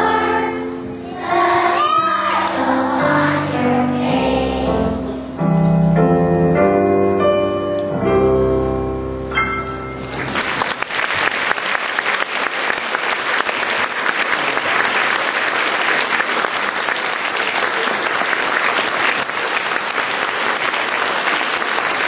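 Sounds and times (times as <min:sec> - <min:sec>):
piano chords: 0:00.0 - 0:10.8
audience applauding: 0:10.0 - 0:22.0.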